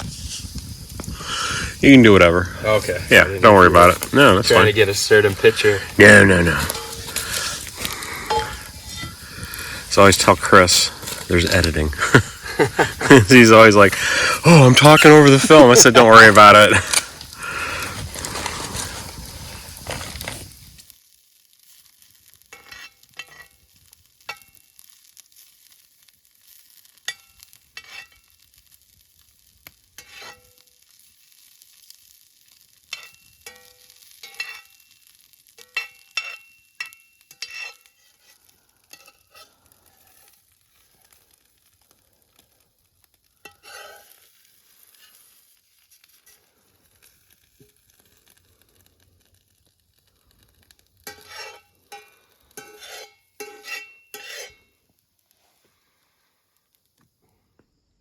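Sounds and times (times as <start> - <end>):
fire popping and crackling: 0.0 - 57.9
steaks sizzling over a fire: 0.0 - 58.0.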